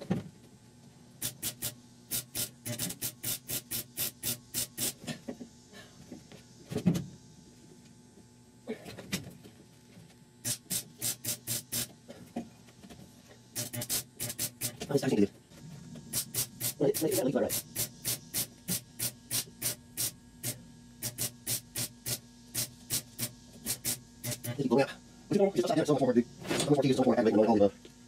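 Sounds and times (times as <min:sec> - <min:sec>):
welder firing short bursts: 0:01.2 - 0:05.0, 0:10.4 - 0:11.9, 0:13.5 - 0:14.8.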